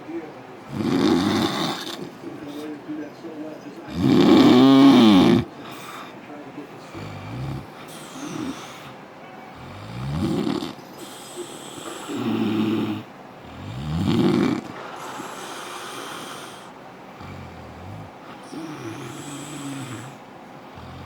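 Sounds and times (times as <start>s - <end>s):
man snoring loudly: 0.7s - 2.1s, 3.9s - 5.5s, 6.9s - 8.8s, 9.6s - 20.2s.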